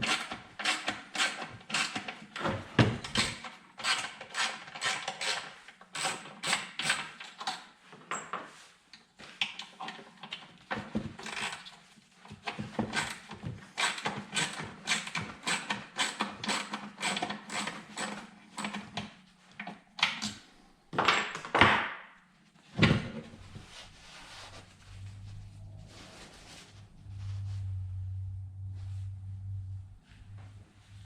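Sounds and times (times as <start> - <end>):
metal scraping: 23.3 - 29.4
low hum: 23.3 - 31.0.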